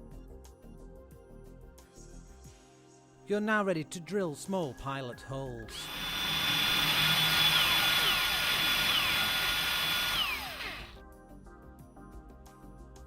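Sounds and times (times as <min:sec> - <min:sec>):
electric drill whining: 0:05.7 - 0:11.0.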